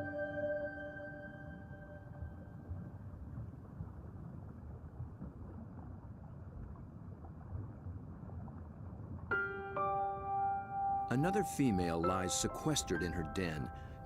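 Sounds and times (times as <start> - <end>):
music chord: 0.0 - 2.2
underwater rumbling water: 2.0 - 9.4.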